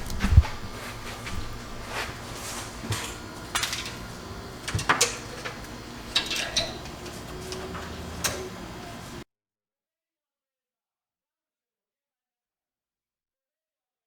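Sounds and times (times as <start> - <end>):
tools and parts clicking: 2.8 - 8.5.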